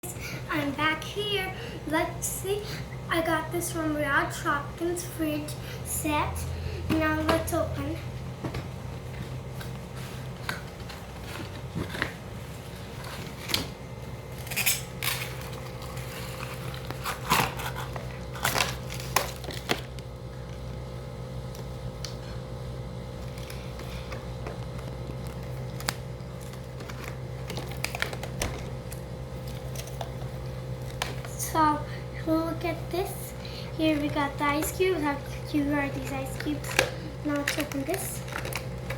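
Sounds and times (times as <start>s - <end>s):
steady low hum: 0.0s - 38.9s
plastic and cardboard crinkling: 14.4s - 20.1s, 23.2s - 28.8s, 35.9s - 38.9s.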